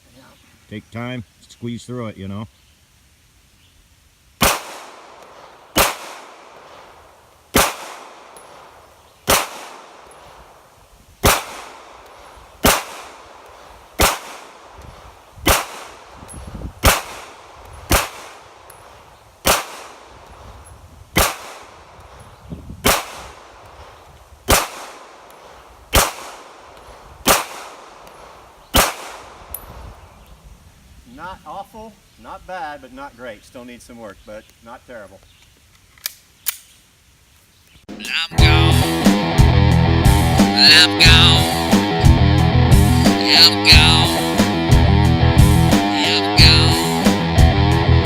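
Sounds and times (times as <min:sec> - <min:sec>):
pistol shots: 0:04.4 - 0:06.9, 0:07.5 - 0:08.7, 0:09.3 - 0:10.2, 0:11.2 - 0:13.4, 0:14.0 - 0:14.7, 0:15.4 - 0:16.0, 0:16.8 - 0:18.5, 0:19.4 - 0:20.1, 0:21.2 - 0:21.8, 0:22.8 - 0:23.5, 0:24.5 - 0:28.1, 0:28.7 - 0:29.5.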